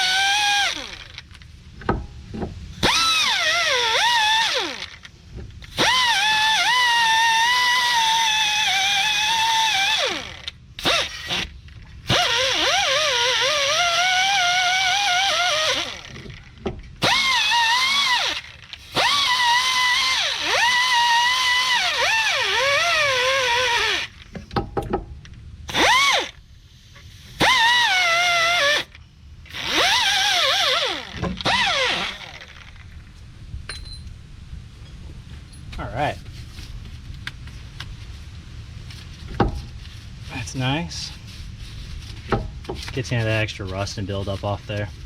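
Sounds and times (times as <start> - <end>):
power drill with wire brush: 0.0 - 1.3, 2.8 - 5.1, 5.7 - 16.4, 17.0 - 24.2, 25.7 - 26.4, 27.0 - 32.8.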